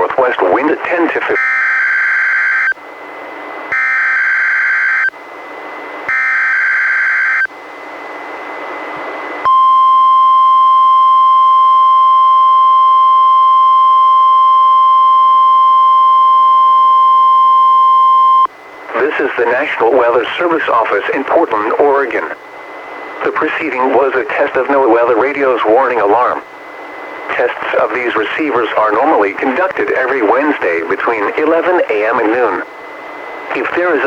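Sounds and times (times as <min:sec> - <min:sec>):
radio hiss: 0:00.0 - 0:01.4, 0:18.4 - 0:34.0
buzzing data bursts: 0:00.9 - 0:02.8, 0:03.7 - 0:05.1, 0:06.1 - 0:07.5
loud steady alarm tone: 0:01.3 - 0:34.0.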